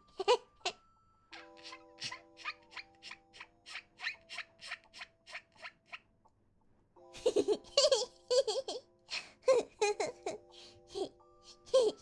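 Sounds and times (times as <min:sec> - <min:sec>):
soft held background chords: 0:00.0 - 0:12.0
hissing mouth noises: 0:01.4 - 0:06.0.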